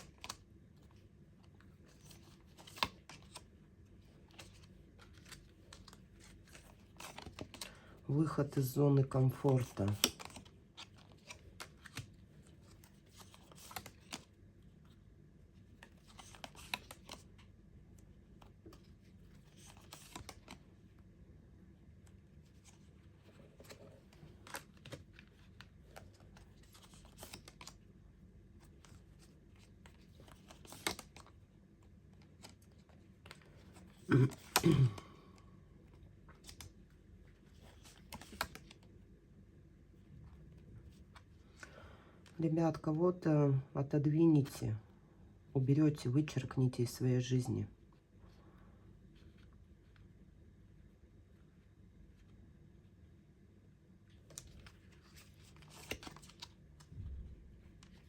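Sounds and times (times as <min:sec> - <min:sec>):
cards clicking and rustling: 0:00.0 - 0:14.9, 0:15.6 - 0:20.9, 0:22.0 - 0:27.9, 0:28.6 - 0:39.0, 0:54.2 - 0:57.0.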